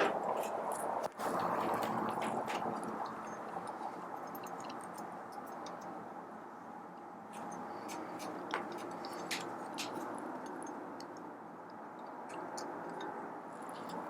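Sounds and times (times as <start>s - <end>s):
light clicks and taps of parts: 7.0s - 14.0s.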